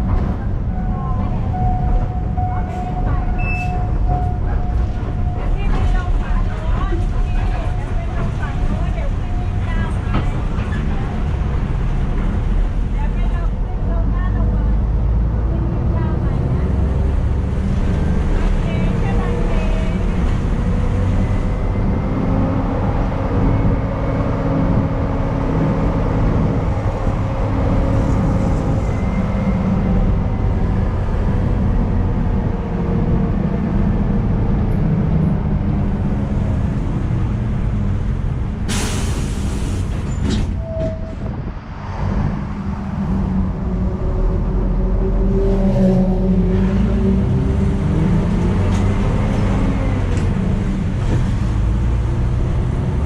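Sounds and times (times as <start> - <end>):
bus engine droning: 0.0 - 53.0.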